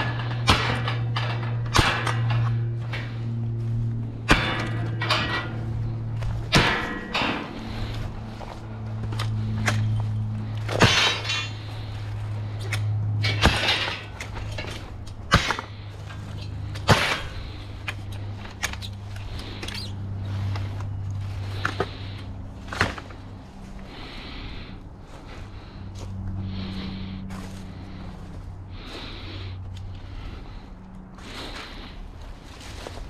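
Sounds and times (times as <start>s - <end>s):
steady low hum: 0.0s - 33.0s
sharp knocks and clinks: 9.1s - 12.0s.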